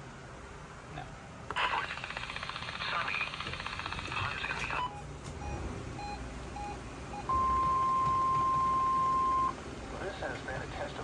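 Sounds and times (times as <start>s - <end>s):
short beeps: 4.8s - 9.6s.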